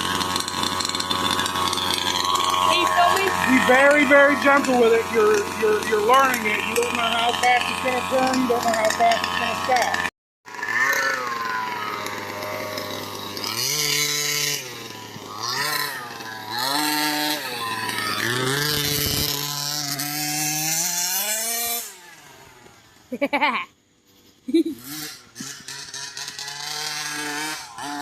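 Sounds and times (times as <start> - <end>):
small two-stroke engine revving: 0.0 - 28.0.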